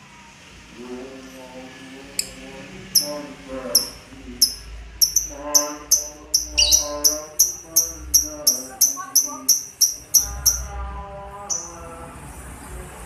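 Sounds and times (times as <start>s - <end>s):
sharp high bird chirps: 3.0s - 10.7s.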